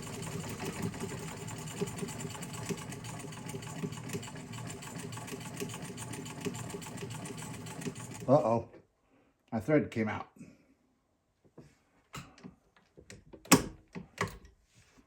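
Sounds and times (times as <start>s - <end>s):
sewing machine stitching: 0.0s - 8.5s.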